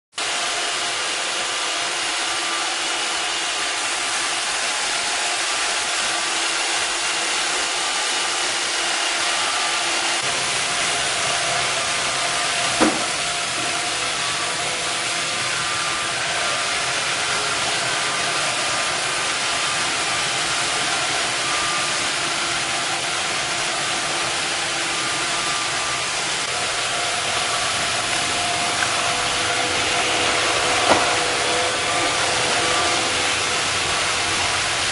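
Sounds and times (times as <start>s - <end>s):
robot vacuum cleaner whirring: 0.2s - 34.9s
sharp knock: 12.8s - 13.2s, 30.8s - 31.3s.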